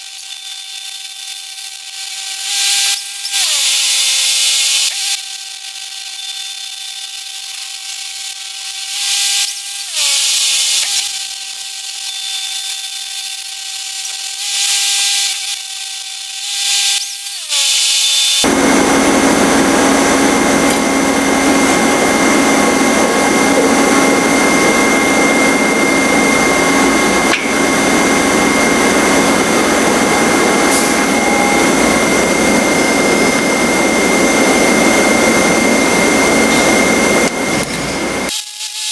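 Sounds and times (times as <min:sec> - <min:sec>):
grinding hiss: 0:00.0 - 0:05.2, 0:07.2 - 0:38.9
power tool whining: 0:00.0 - 0:38.9
loud machine drone: 0:16.5 - 0:38.3.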